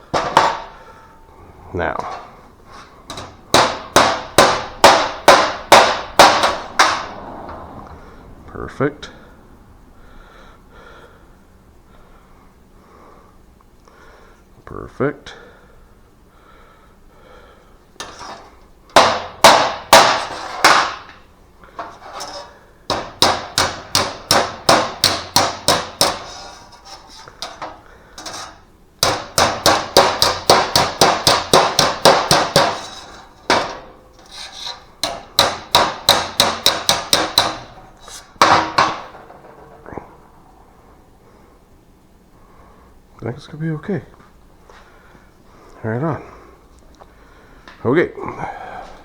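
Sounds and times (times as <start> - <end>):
hammer tapping sheet metal: 0.1 - 0.7, 3.1 - 7.6, 18.0 - 21.2, 21.8 - 40.2.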